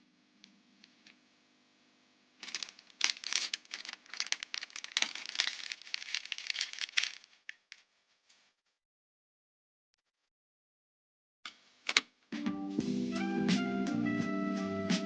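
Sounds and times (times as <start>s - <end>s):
plastic packaging crinkling: 2.4s - 7.8s.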